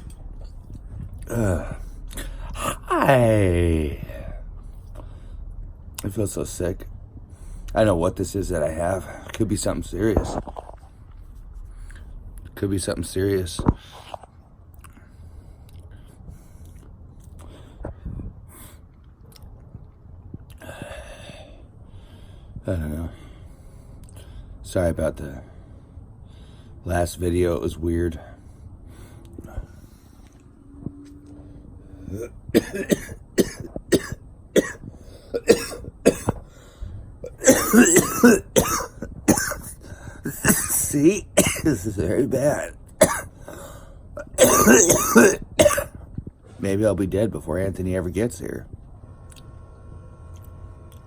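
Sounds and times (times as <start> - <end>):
man breathing: 0.7 - 3.0, 4.0 - 5.8, 7.2 - 7.8, 13.7 - 19.0, 20.6 - 24.6, 25.4 - 26.8, 28.2 - 32.2, 34.9 - 35.4, 36.4 - 37.3, 39.7 - 40.3, 43.3 - 44.2
man coughing: 1.2 - 3.3, 32.1 - 36.4, 37.2 - 41.9, 42.5 - 43.4, 44.2 - 46.0
breathy exhale: 43.4 - 44.1.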